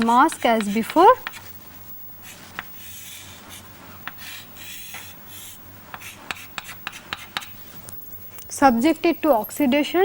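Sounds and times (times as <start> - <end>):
pen scratching on paper: 0.0 - 1.5, 2.2 - 7.6.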